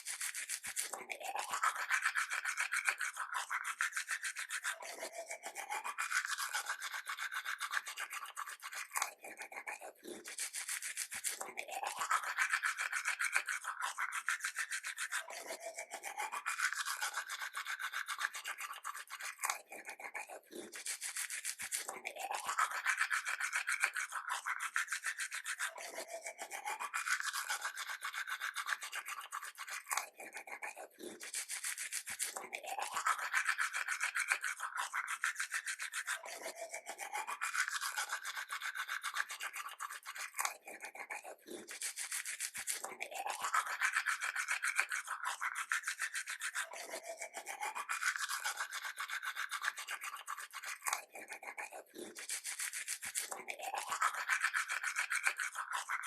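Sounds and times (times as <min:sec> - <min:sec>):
toothbrush scrubbing teeth: 0:00.0 - 0:56.0.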